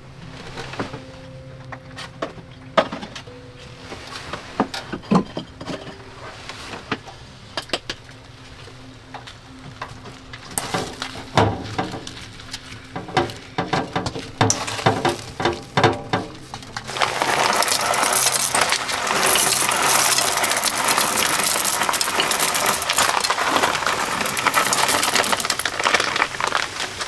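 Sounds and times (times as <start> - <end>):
utensils and cookware clinking: 10.5 - 27.0.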